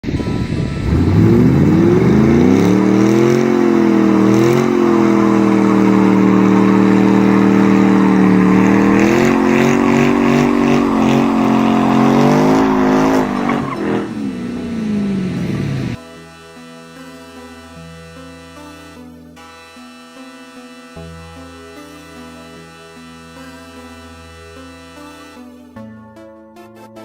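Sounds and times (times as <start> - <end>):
car engine accelerating: 0.0 - 16.0.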